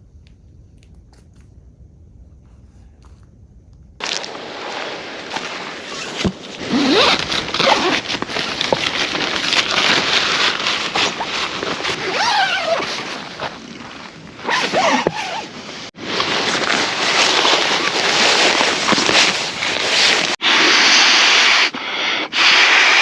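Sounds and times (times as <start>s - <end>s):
zipper being pulled: 4.0s - 21.7s.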